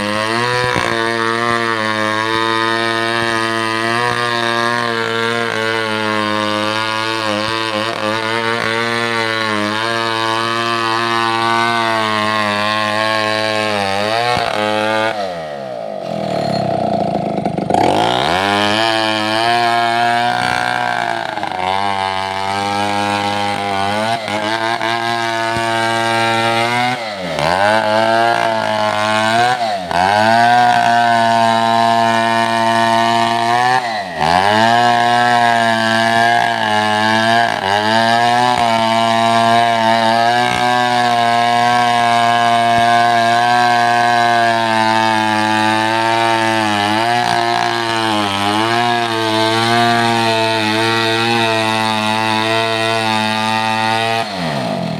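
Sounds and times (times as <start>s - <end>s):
chainsaw running at high revs: 0.0s - 54.9s.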